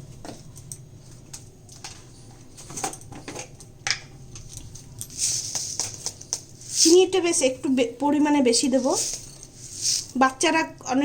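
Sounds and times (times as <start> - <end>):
spoon and containers clicking: 3.0 - 7.0.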